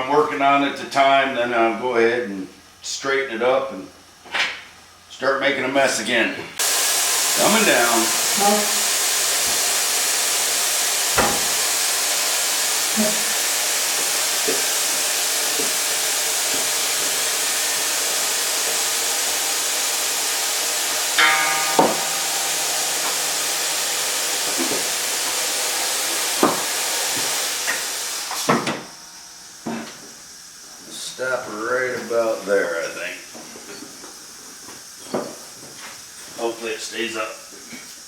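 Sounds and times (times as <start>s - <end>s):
vehicle lift hissing: 6.6s - 31.4s
metal knocks: 21.2s - 24.9s.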